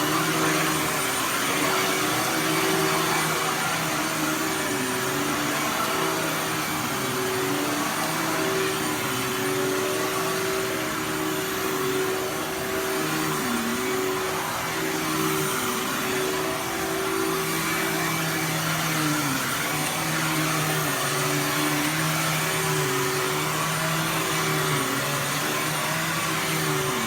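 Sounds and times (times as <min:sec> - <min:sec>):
upright vacuum cleaner running: 0:00.0 - 0:27.0.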